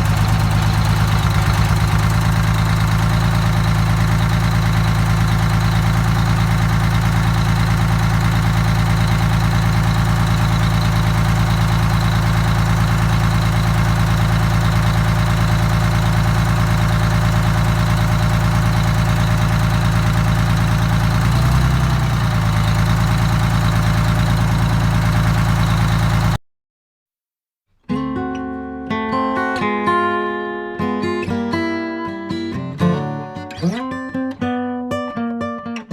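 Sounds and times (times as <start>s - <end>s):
diesel engine idling: 0.0s - 26.4s.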